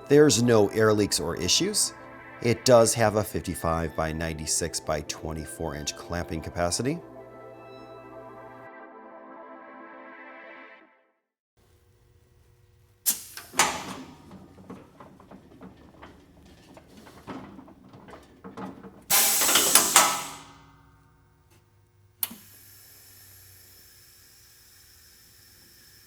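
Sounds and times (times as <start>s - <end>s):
air exhausting blast: 13.0s - 15.0s, 19.1s - 20.8s
burst of air: 13.1s - 14.1s, 19.1s - 20.6s
clamp clunking and rattling: 13.1s - 21.1s
sharp click: 22.2s - 22.5s.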